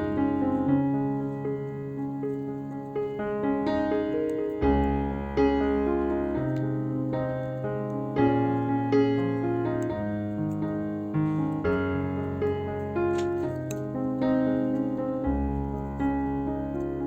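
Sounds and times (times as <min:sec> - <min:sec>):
piano music: 0:00.0 - 0:17.0.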